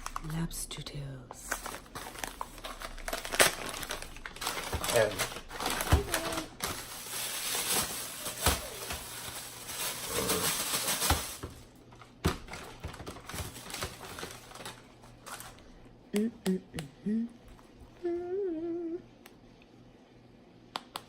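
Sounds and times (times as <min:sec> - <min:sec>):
rustling and crinkling: 0:01.3 - 0:15.8.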